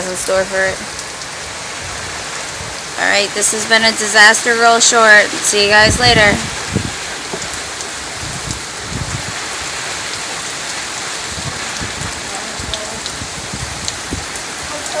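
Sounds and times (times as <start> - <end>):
heavy rain pouring: 0.0 - 15.0
wind gusting on microphone: 0.0 - 15.0
sharp raindrop ticks: 6.7 - 9.1, 10.0 - 15.0.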